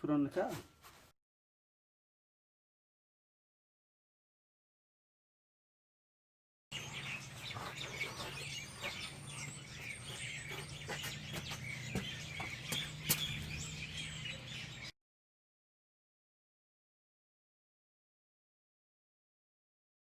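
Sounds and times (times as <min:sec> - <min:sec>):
small birds chirping: 0:06.7 - 0:14.9.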